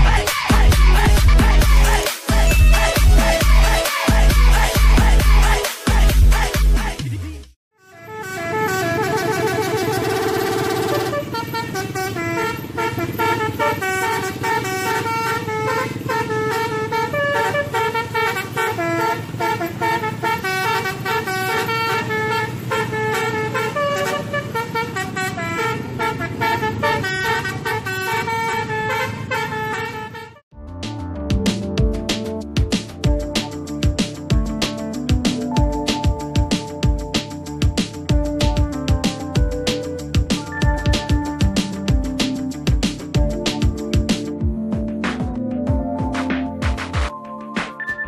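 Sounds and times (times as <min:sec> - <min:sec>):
bus musical horn playing a tune: 0:01.4 - 0:03.9, 0:07.7 - 0:30.4, 0:34.6 - 0:44.7.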